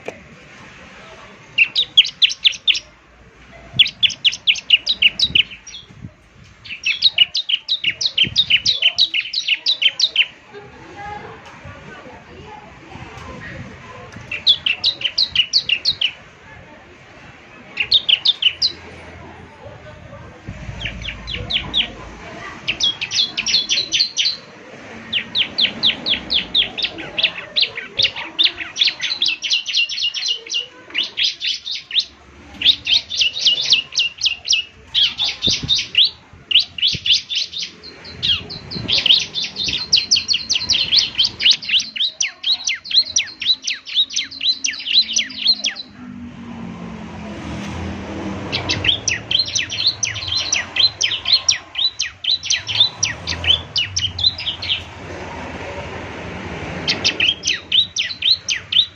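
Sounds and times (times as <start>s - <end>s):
bird singing high rapid notes: 1.6s - 2.9s, 3.8s - 6.0s, 6.6s - 10.3s, 22.6s - 24.5s, 25.1s - 46.0s, 48.4s - 55.0s, 56.7s - 58.9s.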